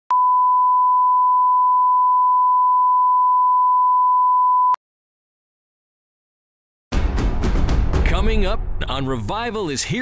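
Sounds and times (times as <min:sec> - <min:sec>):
steady pure test tone beep: 0:00.1 - 0:04.8.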